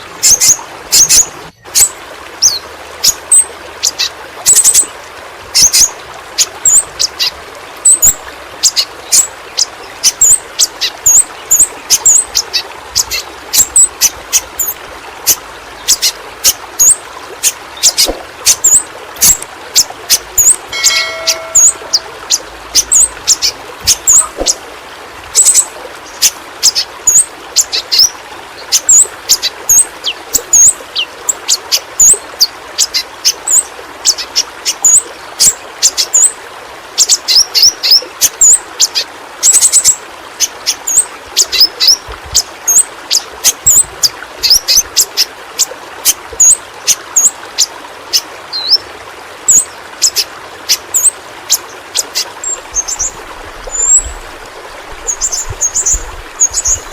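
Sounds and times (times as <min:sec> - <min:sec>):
running water: 0:00.0 - 0:56.9
bird chirping: 0:20.1 - 0:24.6, 0:52.4 - 0:54.2, 0:54.9 - 0:56.9.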